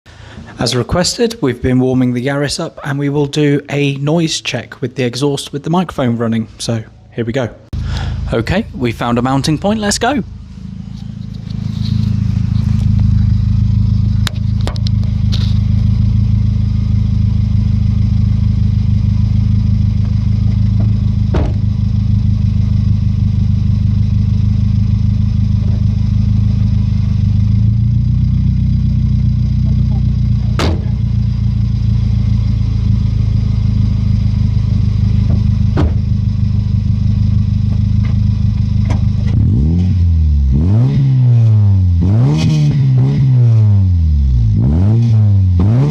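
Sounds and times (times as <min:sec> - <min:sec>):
car engine idling and revving: 0:07.7 - 0:45.9
sharp knocks: 0:20.8 - 0:21.7, 0:30.6 - 0:31.0, 0:35.3 - 0:36.1.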